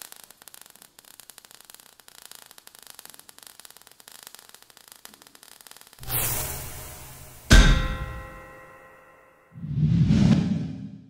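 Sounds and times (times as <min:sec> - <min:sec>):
faint crackling hiss: 0:00.0 - 0:07.5.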